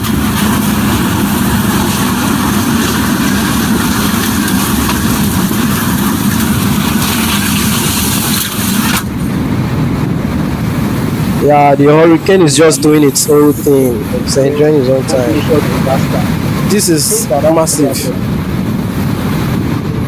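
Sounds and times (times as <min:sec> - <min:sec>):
strong wind on microphone: 0:00.0 - 0:20.0.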